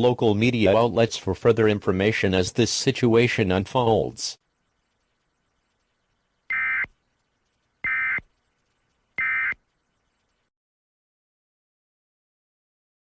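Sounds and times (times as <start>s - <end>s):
digital data bursts: 6.4s - 6.9s, 7.8s - 8.3s, 9.2s - 9.6s.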